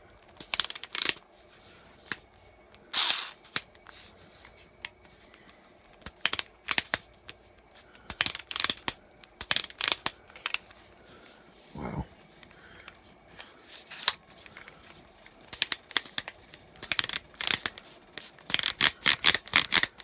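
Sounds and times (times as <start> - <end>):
plastic clicks: 15.5 - 20.0.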